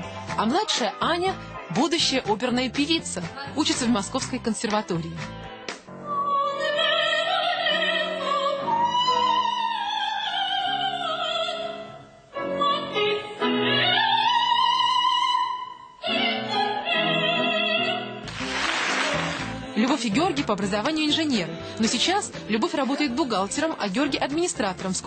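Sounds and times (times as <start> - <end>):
woman singing opera: 6.0 - 18.2, 19.4 - 24.3.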